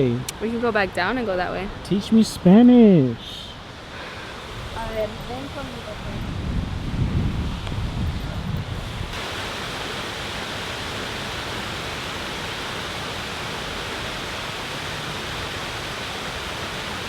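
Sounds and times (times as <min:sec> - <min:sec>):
steady rushing noise: 0:03.7 - 0:17.0.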